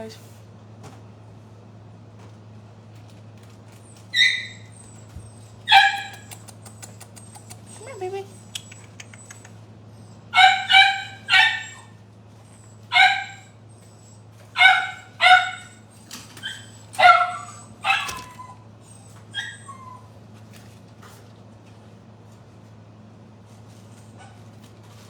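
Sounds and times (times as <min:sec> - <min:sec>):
dog barking: 0:05.7 - 0:06.5, 0:10.3 - 0:11.9, 0:12.9 - 0:13.5, 0:14.6 - 0:15.8, 0:16.4 - 0:18.4.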